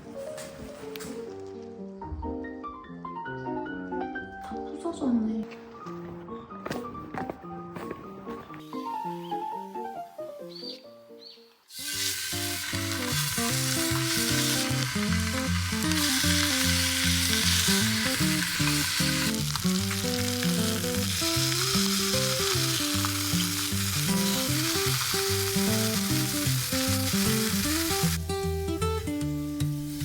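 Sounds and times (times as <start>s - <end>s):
melodic background music: 0.0s - 30.0s
meat sizzling in a pan: 11.7s - 28.2s.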